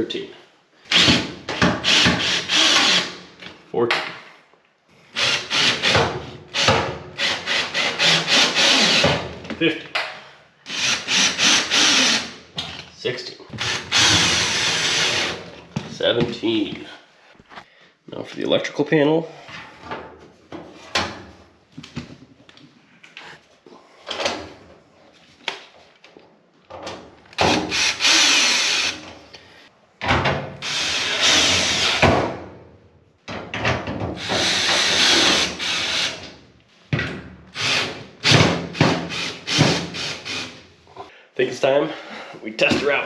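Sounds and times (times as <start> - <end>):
cordless drill driving screws: 0.9 - 3.1, 5.2 - 9.1, 10.7 - 12.4, 13.5 - 15.5, 27.4 - 29.0, 30.6 - 32.1, 34.2 - 36.3, 37.6 - 40.6.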